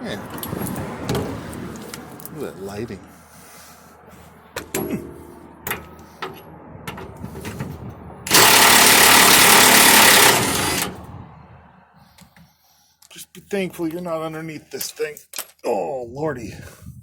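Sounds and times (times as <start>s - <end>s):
metal clicks and knocks: 4.6s - 8.4s
impact wrench hammering: 8.3s - 11.0s.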